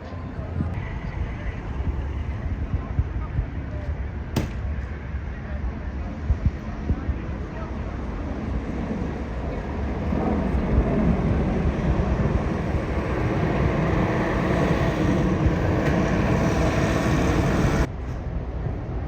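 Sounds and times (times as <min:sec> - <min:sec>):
engine drone with rumble: 0:00.0 - 0:19.0.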